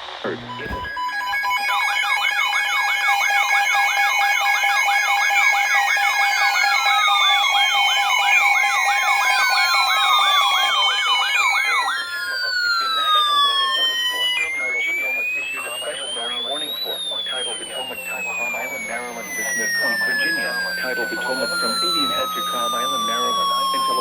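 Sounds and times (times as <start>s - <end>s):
steady alarm tones: 0.0s - 24.0s
fast warbling siren: 0.3s - 24.0s
slow falling tone: 9.1s - 24.0s.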